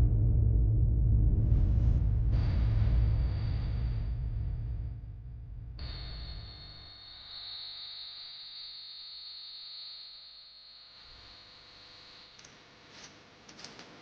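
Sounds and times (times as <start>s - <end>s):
faint high-pitched tone: 5.8s - 12.5s.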